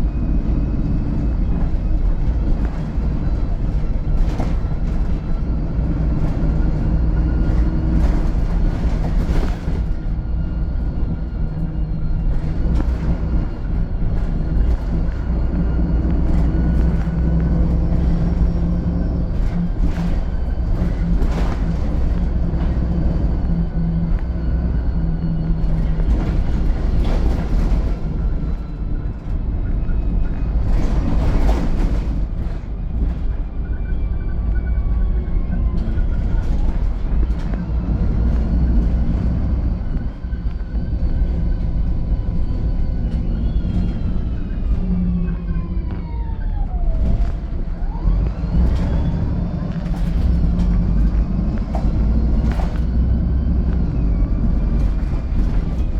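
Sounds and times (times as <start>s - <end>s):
bus engine drone: 0.0s - 55.9s
knocks and rattles: 46.9s - 55.9s.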